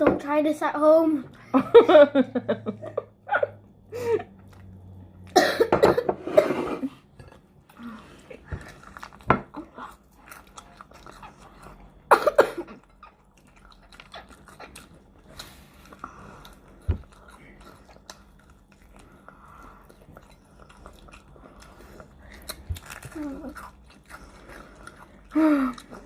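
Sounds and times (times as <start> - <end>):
chewing and mouth noises: 4.3 - 5.4, 7.3 - 12.1, 12.7 - 26.0
person coughing: 5.4 - 6.8, 12.1 - 12.8.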